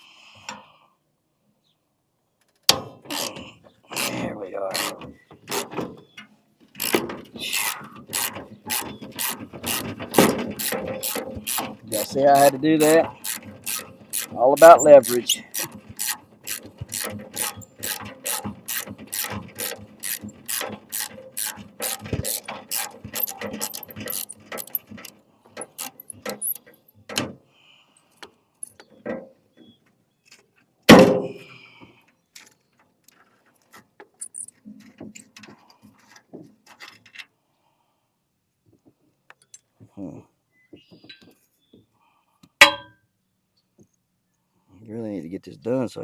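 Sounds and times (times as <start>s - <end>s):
ratchet wrench clicking: 4.7s - 5.6s, 6.8s - 25.0s, 25.6s - 26.6s.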